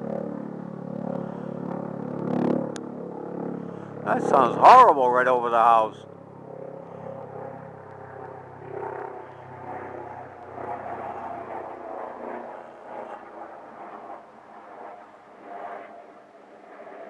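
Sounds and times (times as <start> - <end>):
helicopter rotor drone: 0.0 - 12.6.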